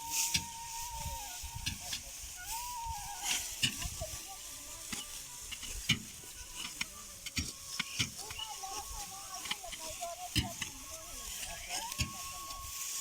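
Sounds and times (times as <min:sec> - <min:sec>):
dry straw rustling and crackling: 0:00.0 - 0:13.0.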